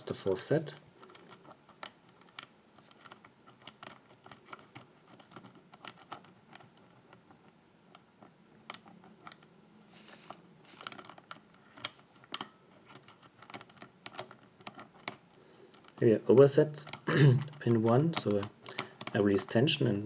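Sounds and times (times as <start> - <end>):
metallic clicks of lock picking: 0.7 - 6.7, 8.6 - 9.5, 10.8 - 19.2.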